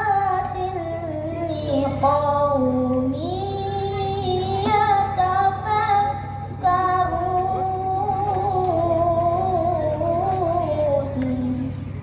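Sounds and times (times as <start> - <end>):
child chanting recitation: 0.0 - 11.8.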